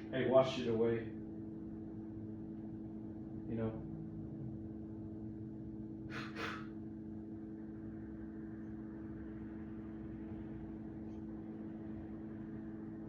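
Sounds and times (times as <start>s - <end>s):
steady low hum: 0.0s - 13.0s
breathy puffs of breath: 6.1s - 6.7s.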